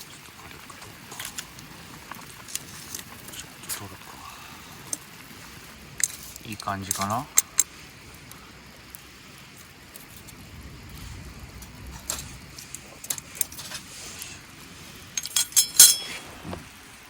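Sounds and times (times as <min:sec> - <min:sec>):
metal cooking gear clinking: 0:15.2 - 0:16.2.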